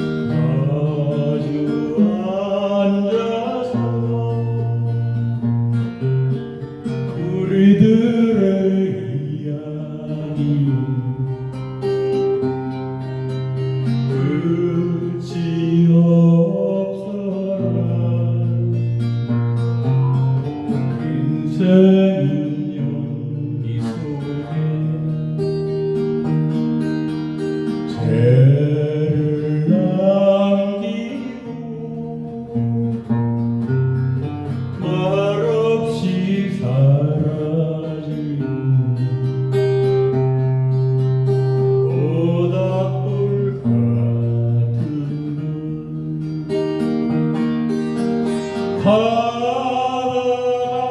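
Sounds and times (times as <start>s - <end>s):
person singing: 0.0s - 5.2s, 7.1s - 11.5s, 28.0s - 33.2s, 41.4s - 46.5s, 48.7s - 50.9s
acoustic guitar strumming: 0.0s - 50.9s.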